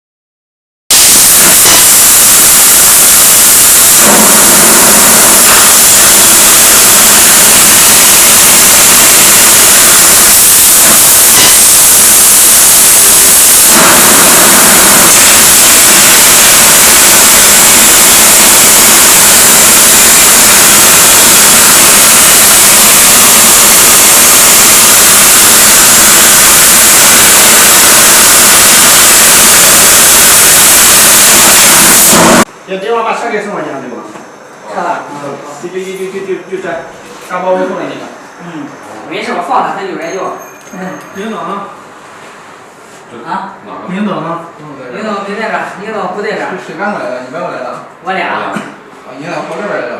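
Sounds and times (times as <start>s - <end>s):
laser cutter gas jet hissing: 4.0s - 5.0s, 13.7s - 14.9s.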